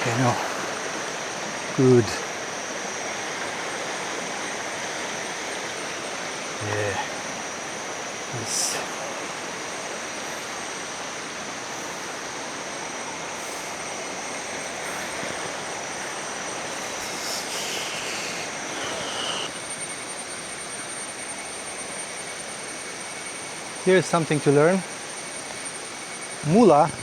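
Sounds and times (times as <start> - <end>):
waterfall stream rushing: 0.0 - 2.3, 8.3 - 19.5.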